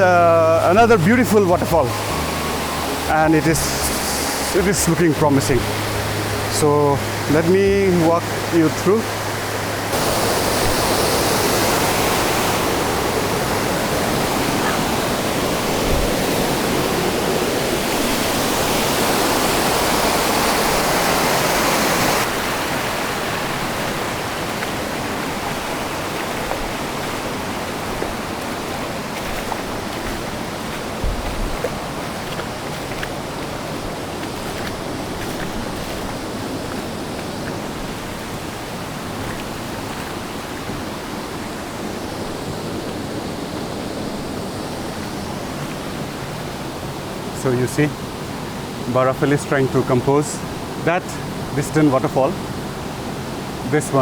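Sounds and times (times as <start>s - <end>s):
waterfall rushing: 0.0s - 54.0s.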